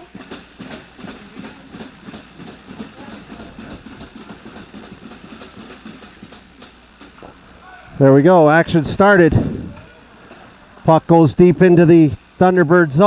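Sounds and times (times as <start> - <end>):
scattered knocks and clicks: 0.0 - 7.4
murmur of distant voices: 0.0 - 10.9
steady low hum: 0.0 - 13.0.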